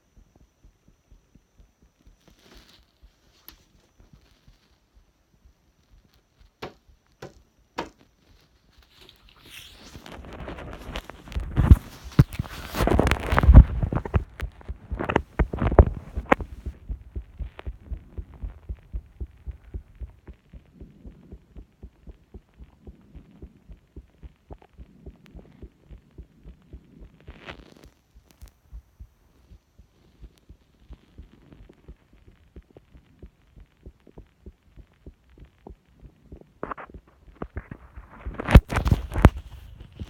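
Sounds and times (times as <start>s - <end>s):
heartbeat thumps: 0.0s - 3.3s, 3.9s - 8.0s, 10.2s - 40.0s
sharp knocks: 6.6s - 8.0s
brief rustling: 6.6s - 16.8s.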